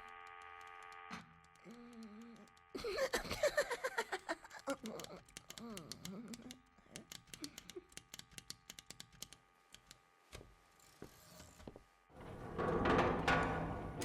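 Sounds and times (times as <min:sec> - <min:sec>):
mechanical clicks and ticks: 0:00.0 - 0:02.8, 0:04.6 - 0:10.0.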